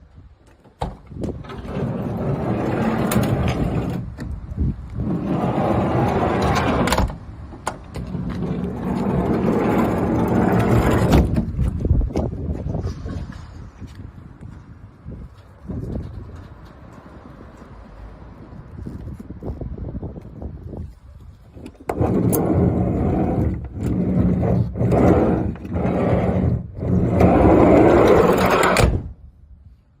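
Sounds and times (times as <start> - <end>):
sliding door rattling: 0.6 - 4.4, 5.0 - 11.7, 21.9 - 29.1.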